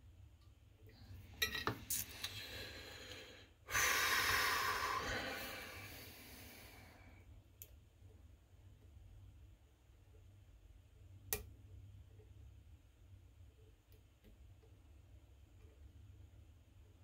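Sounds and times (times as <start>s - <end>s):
person breathing out: 2.0s - 7.2s.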